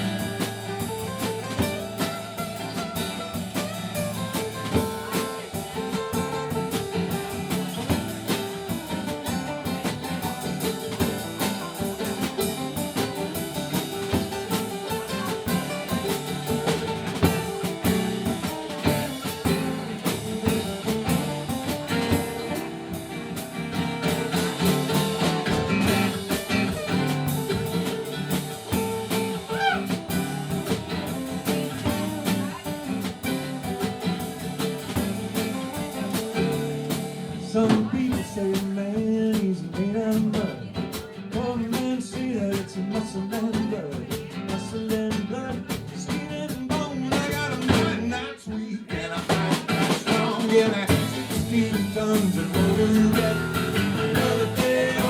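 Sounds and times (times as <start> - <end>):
drum kit: 0.0 - 55.0
electric guitar: 0.0 - 55.0.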